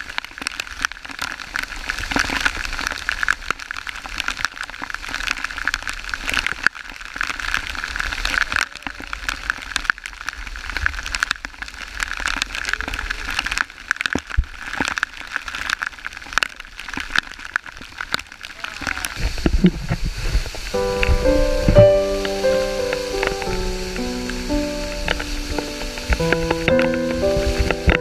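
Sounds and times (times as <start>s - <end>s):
waterfall pouring and splashing: 18.6s - 28.0s.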